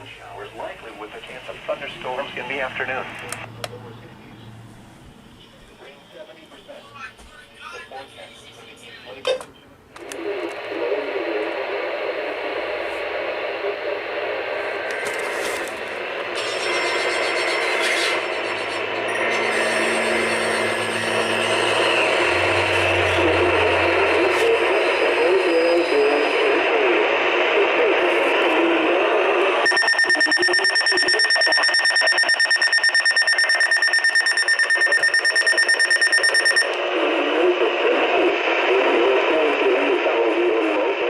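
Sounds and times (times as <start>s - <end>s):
static-laden radio broadcast: 0.0s - 4.5s, 10.0s - 41.0s
rapidly pulsing alert beep: 29.6s - 36.7s.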